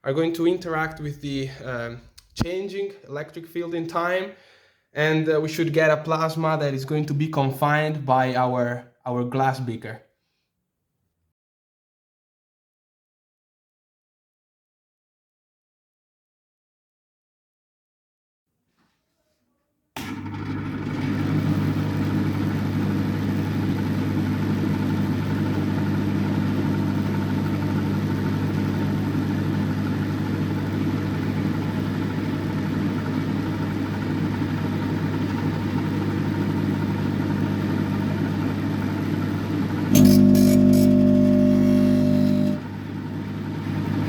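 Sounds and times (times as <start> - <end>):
sharp clicks: 2.1 - 2.5
microwave oven humming: 20.0 - 44.0.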